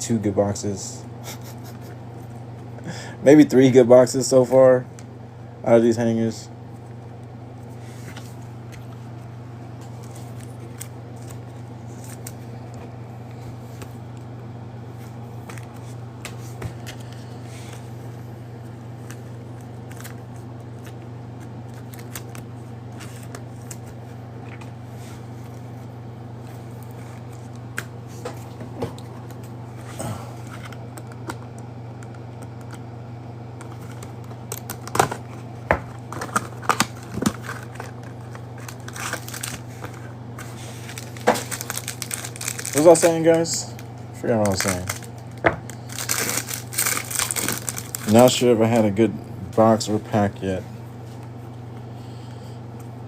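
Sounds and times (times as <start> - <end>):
steady low hum: 0.0 - 53.0
cards and packaging handled: 9.8 - 12.9, 19.0 - 24.7, 33.6 - 48.9.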